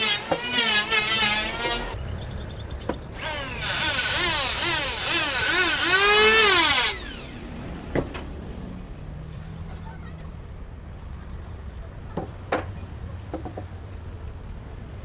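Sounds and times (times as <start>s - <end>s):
electric wood planer motor: 0.0s - 2.0s, 3.2s - 7.6s.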